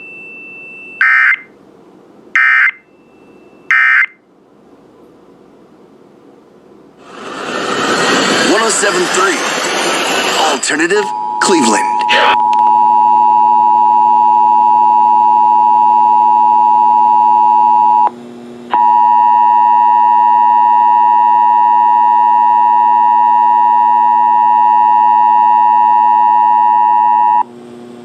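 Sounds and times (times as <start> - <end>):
two-tone alarm tone: 0.0 - 1.5, 2.4 - 4.2, 11.1 - 18.1, 18.7 - 27.4.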